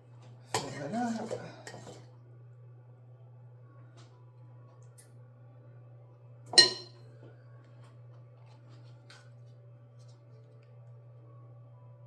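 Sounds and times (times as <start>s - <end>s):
steady low hum: 0.0s - 12.0s
utensil clinking on kitchenware: 0.5s - 2.0s, 6.5s - 7.0s.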